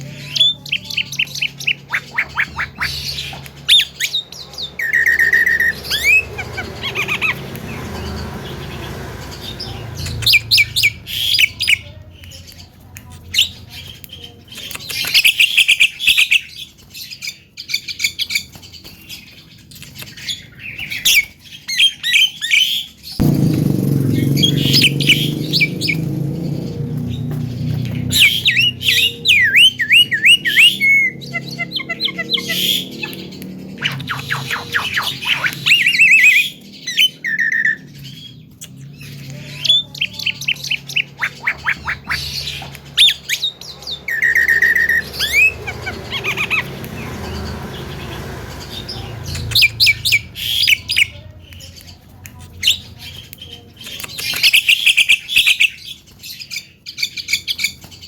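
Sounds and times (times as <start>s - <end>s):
bird chirping whistling and squawking: 0.1s - 7.4s, 27.9s - 46.7s, 49.0s - 51.2s, 54.2s - 57.8s.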